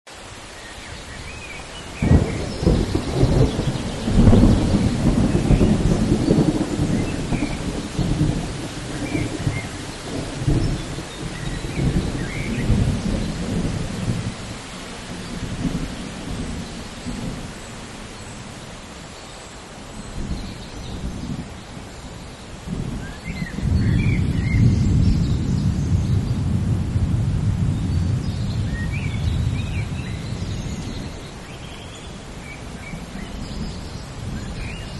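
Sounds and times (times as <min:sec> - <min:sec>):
falling rain: 0:00.1 - 0:34.9
thunder rumbling: 0:01.9 - 0:18.1, 0:22.6 - 0:31.4.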